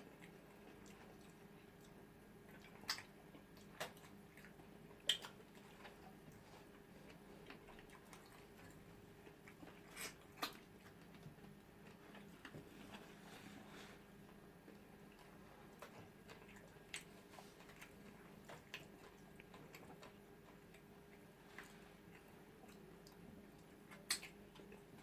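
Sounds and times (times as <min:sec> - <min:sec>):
faint steady hum: 0:00.0 - 0:25.0
soft chewing: 0:00.0 - 0:25.0
mouth clicks and smacks: 0:02.6 - 0:05.4, 0:23.9 - 0:24.4.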